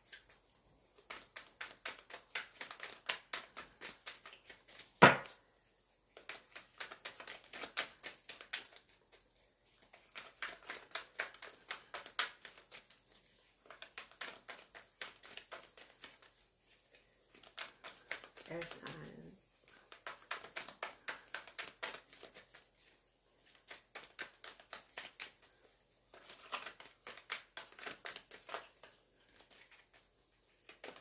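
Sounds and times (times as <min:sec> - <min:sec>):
cards being shuffled: 0:01.0 - 0:05.4, 0:06.2 - 0:08.8, 0:09.9 - 0:13.0, 0:13.7 - 0:16.4, 0:17.3 - 0:22.6, 0:23.7 - 0:31.0
sharp knock: 0:05.0 - 0:05.2.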